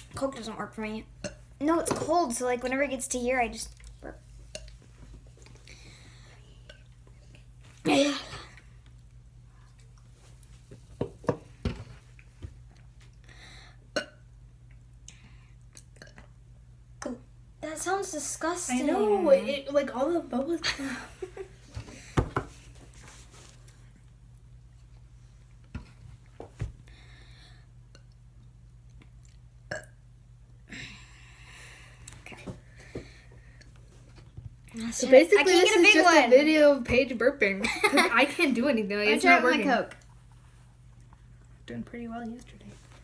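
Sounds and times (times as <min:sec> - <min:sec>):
low steady hum: 0:00.0 - 0:43.0
mouth clicks and gulps: 0:15.0 - 0:16.4.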